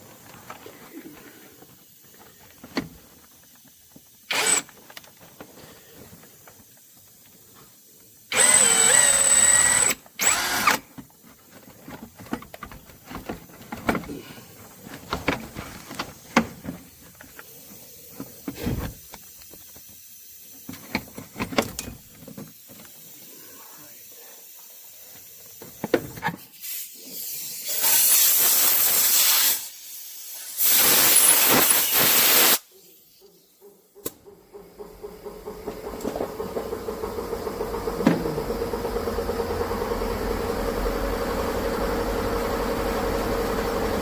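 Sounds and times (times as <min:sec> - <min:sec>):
hissing spray blasts: 0:26.4 - 0:33.6
pulsing mechanical hum: 0:33.8 - 0:44.0.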